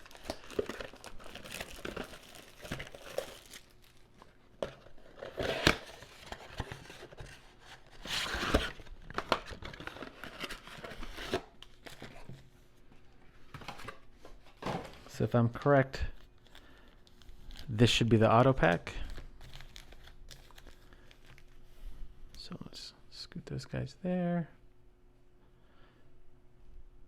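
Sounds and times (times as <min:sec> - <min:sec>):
plastic ripping: 0:00.0 - 0:12.2
plastic wrapping crinkling: 0:00.0 - 0:12.3, 0:16.2 - 0:21.6.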